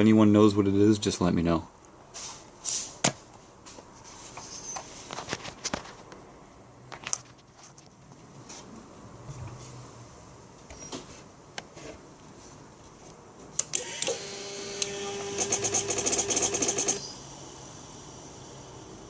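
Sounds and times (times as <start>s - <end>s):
electrical whir: 13.6s - 19.0s.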